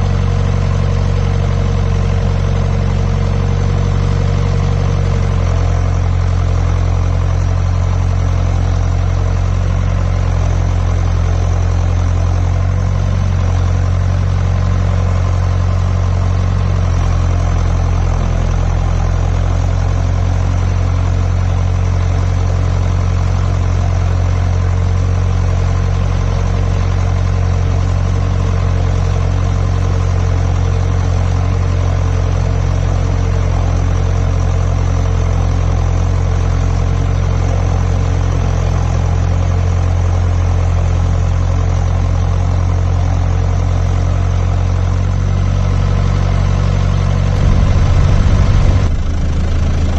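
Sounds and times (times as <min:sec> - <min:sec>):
tractor diesel engine droning: 0:43.7 - 0:49.9.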